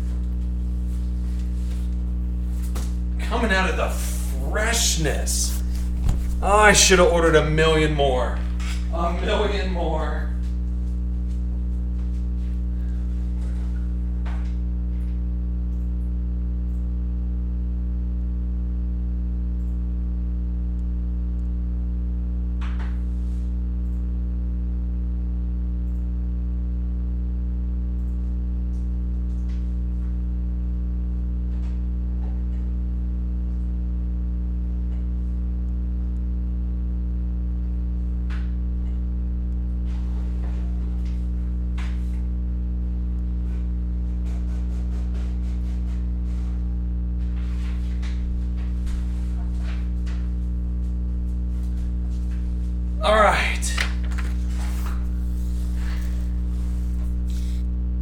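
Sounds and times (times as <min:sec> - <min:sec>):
electrical mains hum: 0:00.0 - 0:58.0
card packs rustling and clicking: 0:04.4 - 0:07.6, 0:53.7 - 0:58.0.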